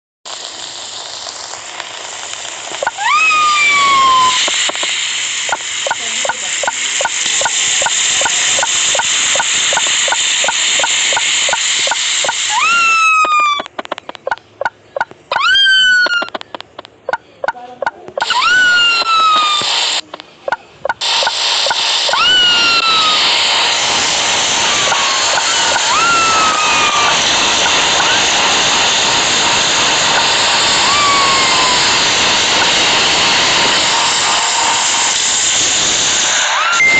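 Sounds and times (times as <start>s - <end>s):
washing machine motor whine: 2.8s - 13.7s, 18.2s - 36.9s
steady clicking: 13.6s - 15.2s, 16.2s - 18.3s.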